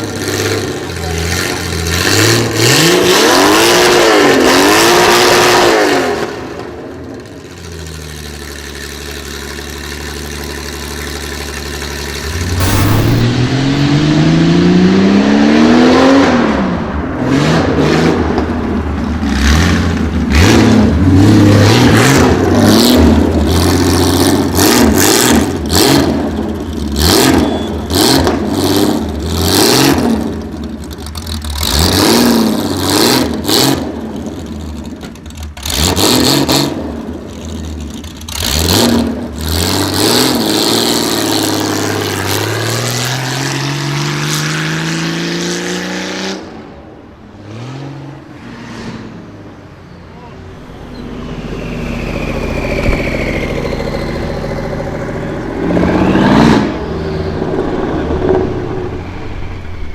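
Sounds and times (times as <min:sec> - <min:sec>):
car engine revving: 0:11.9 - 0:26.4
exhaust pops and bangs: 0:12.3 - 0:13.8.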